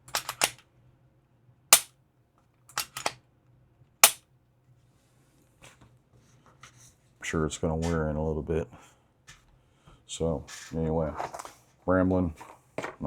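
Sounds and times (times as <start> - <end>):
pistol slide racking: 0.0 - 0.6, 2.7 - 3.2
pistol trigger dry-fire snap: 0.1 - 0.5, 2.8 - 3.1.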